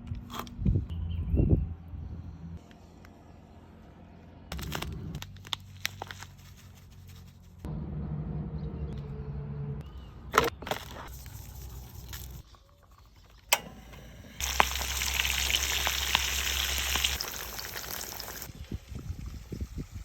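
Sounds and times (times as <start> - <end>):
fish sizzling in hot oil: 14.4 - 20.0.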